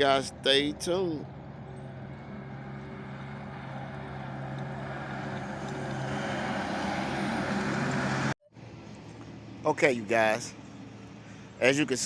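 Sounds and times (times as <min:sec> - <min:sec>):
diesel engine running: 0:00.4 - 0:08.4.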